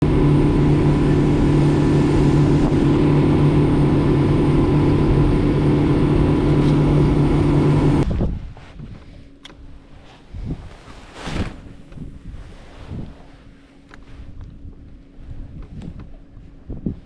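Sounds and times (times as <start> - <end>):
boat motor humming: 0.0 - 8.0
water: 0.0 - 8.0
faint wind: 0.0 - 17.0.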